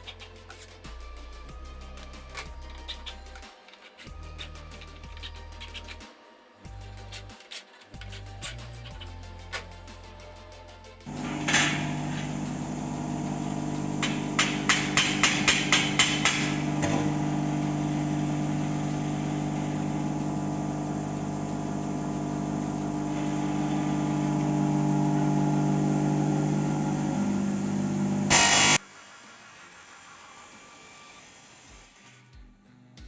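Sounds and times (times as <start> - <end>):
machine humming: 6.6 - 28.8.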